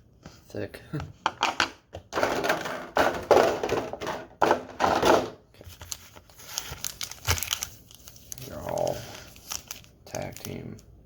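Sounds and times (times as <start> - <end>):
foil packs rustling and crinkling: 5.6 - 10.8.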